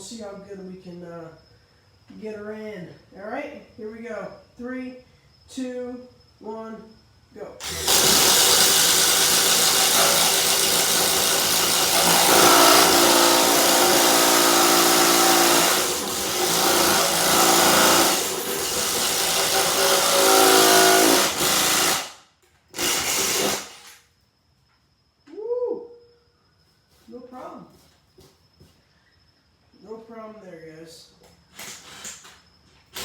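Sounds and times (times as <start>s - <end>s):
impact driver boring: 7.6s - 22.2s, 22.8s - 24.0s, 31.5s - 33.0s.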